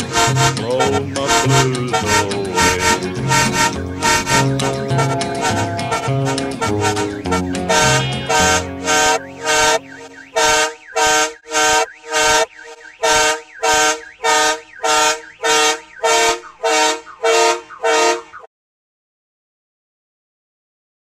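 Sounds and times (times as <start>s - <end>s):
song playing: 0.0s - 12.5s
train air horn blasts: 0.0s - 18.4s.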